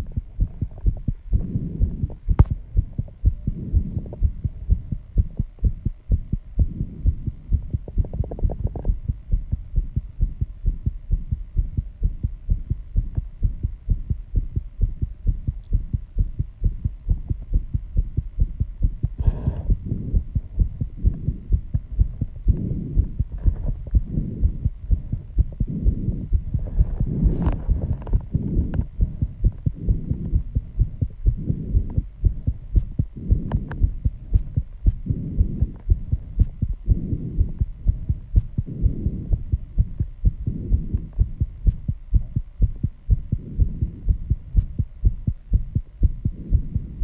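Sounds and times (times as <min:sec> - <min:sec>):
fast heartbeat: 0:00.0 - 0:47.0
person breathing: 0:19.1 - 0:20.7, 0:35.0 - 0:36.3.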